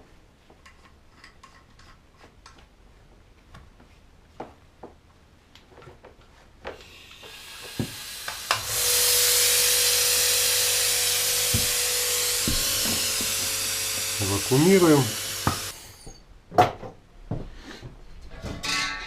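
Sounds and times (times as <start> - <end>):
vacuum pump running: 7.1 - 15.8.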